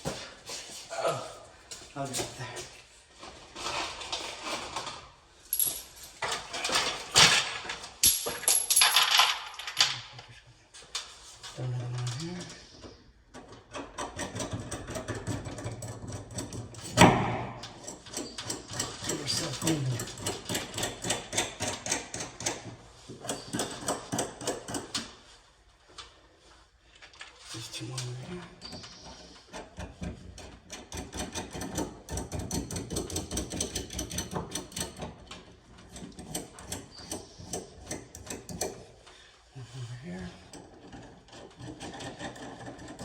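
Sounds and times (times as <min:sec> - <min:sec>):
small metal parts jangling: 0:05.5 - 0:10.3.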